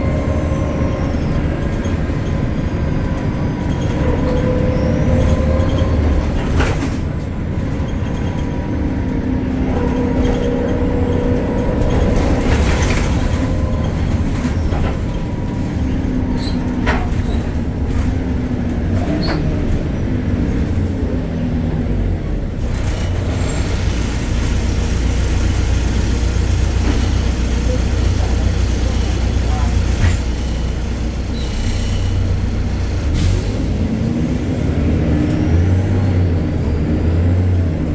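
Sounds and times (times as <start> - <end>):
bus engine rumble: 0.0 - 37.9.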